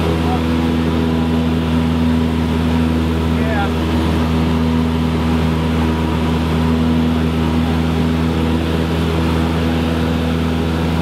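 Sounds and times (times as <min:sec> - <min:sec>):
propeller airplane engine drone: 0:00.0 - 0:11.0.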